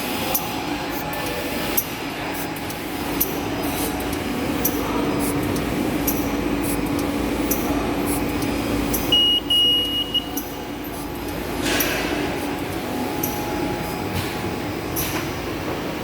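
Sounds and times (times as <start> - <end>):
sharp machine clicks: 0.0 - 14.1
machine hum: 0.0 - 16.0
high electronic beeps: 8.9 - 10.6.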